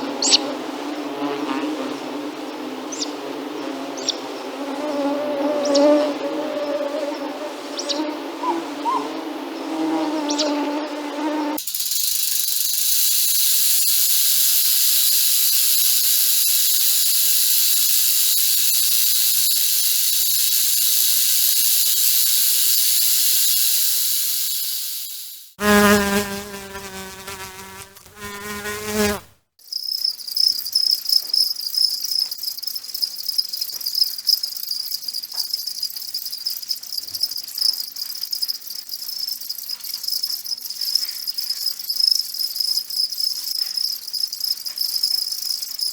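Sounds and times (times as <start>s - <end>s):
high buzzing insect chorus: 9.6s - 29.3s
cricket trilling: 11.6s - 29.2s.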